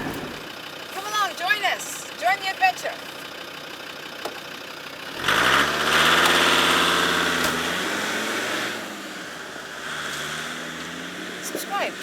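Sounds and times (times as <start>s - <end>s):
car engine revving: 0.0s - 0.6s, 5.0s - 12.0s.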